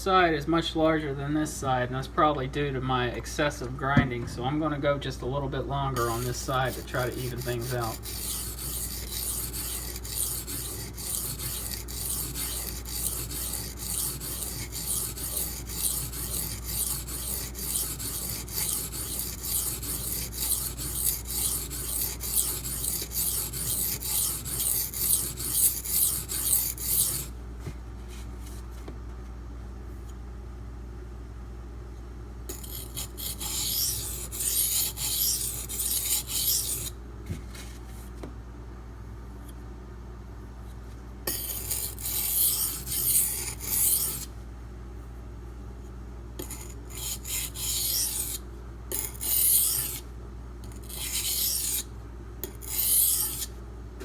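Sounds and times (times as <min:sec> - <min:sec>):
knife scraping on sharpening stone: 0:06.0 - 0:27.3, 0:32.5 - 0:36.9, 0:41.3 - 0:44.3, 0:46.4 - 0:50.0, 0:50.6 - 0:53.5.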